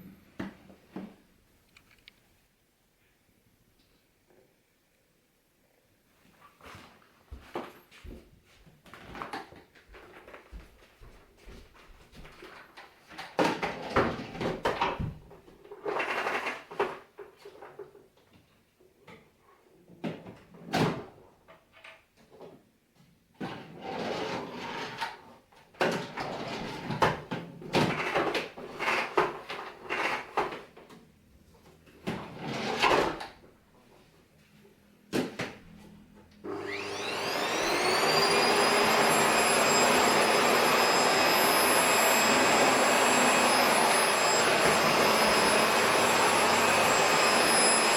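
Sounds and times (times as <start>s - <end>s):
vacuum cleaner motor running: 36.4s - 47.9s.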